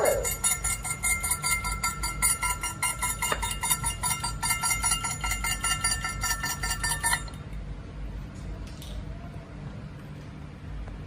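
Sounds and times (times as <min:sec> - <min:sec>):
steady ringing tone: 0:00.0 - 0:07.6.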